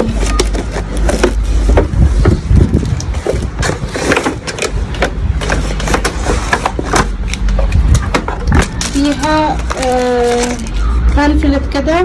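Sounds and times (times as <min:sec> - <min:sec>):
cardboard box being opened: 0:00.0 - 0:07.2.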